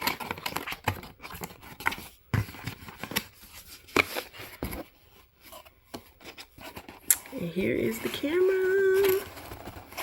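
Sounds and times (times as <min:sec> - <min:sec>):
packaging rustling: 0:00.0 - 0:10.0.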